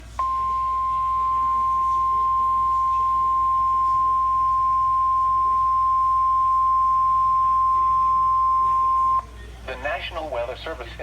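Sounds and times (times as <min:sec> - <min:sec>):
steady loud alarm tone: 0:00.2 - 0:09.2.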